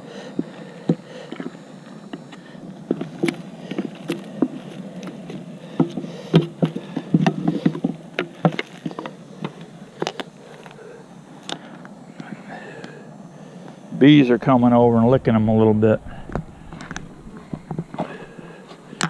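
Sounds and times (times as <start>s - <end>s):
honeybees buzzing: 0.0s - 19.0s
hive equipment knocking and clattering: 0.3s - 10.8s, 16.1s - 19.0s.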